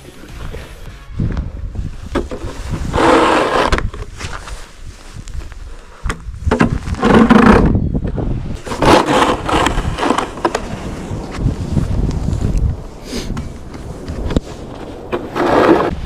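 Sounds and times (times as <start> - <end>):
shovel scraping snow: 2.4 - 4.9, 8.6 - 11.5, 14.4 - 16.0.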